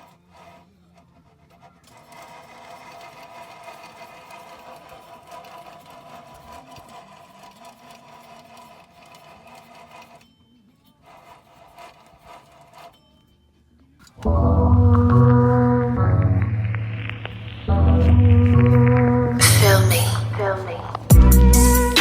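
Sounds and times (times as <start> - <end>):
vehicle wheel whirring and rattling: 0.0 - 10.3, 11.0 - 13.2.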